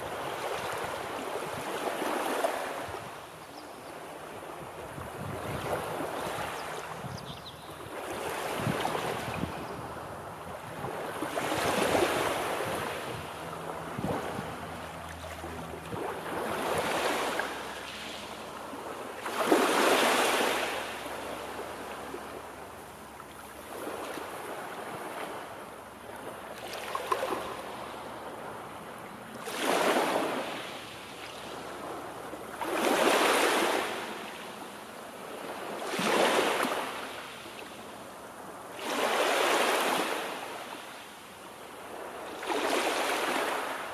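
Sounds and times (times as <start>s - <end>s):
small waves breaking: 0.0s - 43.9s.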